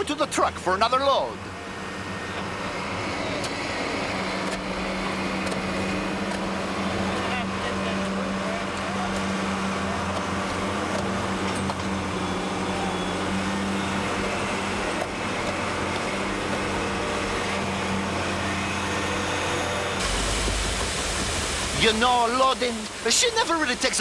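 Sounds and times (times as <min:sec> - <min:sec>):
heavy machine engine humming: 0:00.0 - 0:24.0.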